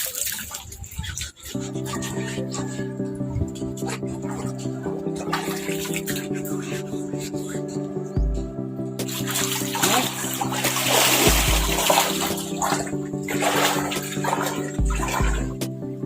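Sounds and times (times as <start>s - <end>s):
water splashing and sloshing: 0.0s - 16.0s
background music with held tones: 1.4s - 16.0s
deep bass hits: 8.1s - 9.2s, 10.1s - 13.2s, 14.8s - 15.8s.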